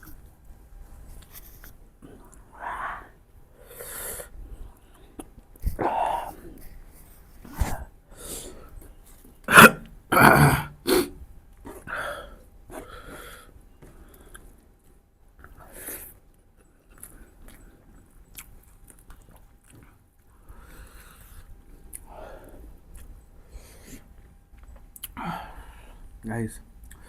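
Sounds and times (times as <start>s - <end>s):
person chewing and biting: 16.8s - 20.0s.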